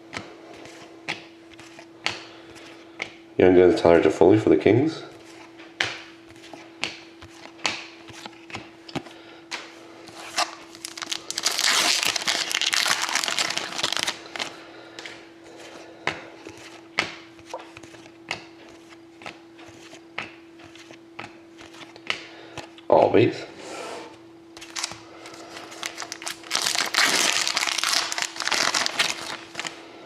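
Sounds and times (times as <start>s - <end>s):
faint steady hum: 0.0s - 30.0s
wrapper crinkling and tearing: 10.3s - 14.5s, 24.6s - 29.8s.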